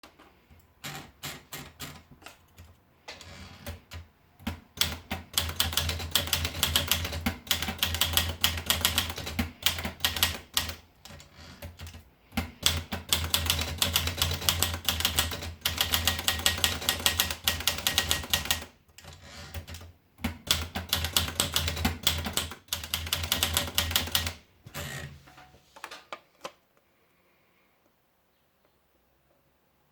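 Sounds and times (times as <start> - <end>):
manual typewriter keystrokes: 0.8 - 24.4.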